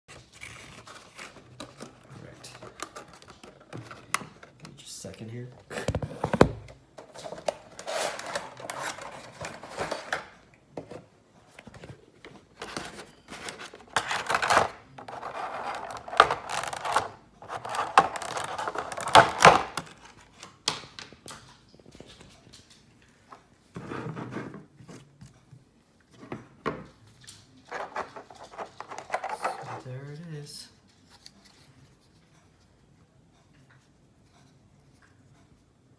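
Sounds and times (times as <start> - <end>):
packaging being opened: 7.1 - 10.3, 12.6 - 20.6.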